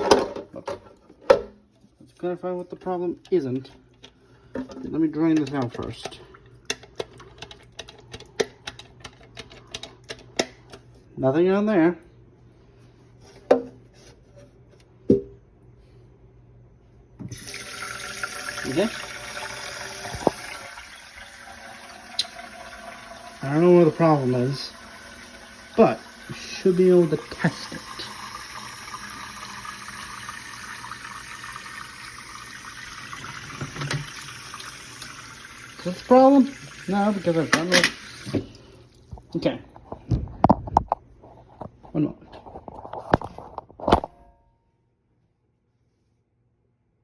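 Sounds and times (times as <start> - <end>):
water running: 17.2 - 39.7.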